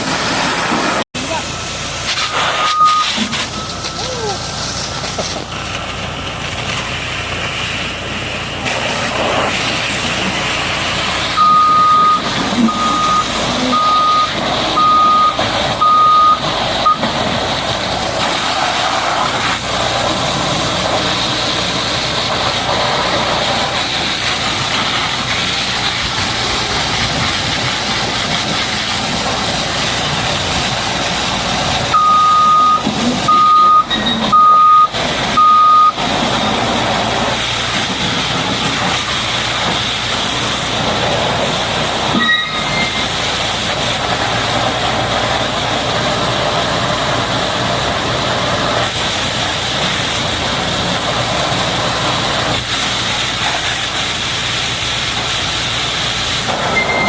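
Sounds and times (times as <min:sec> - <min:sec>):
steady loud machinery noise: 0:00.0 - 0:57.0
reversing alarm beeps: 0:02.3 - 0:04.5, 0:11.4 - 0:17.1, 0:31.9 - 0:36.0, 0:56.7 - 0:57.0.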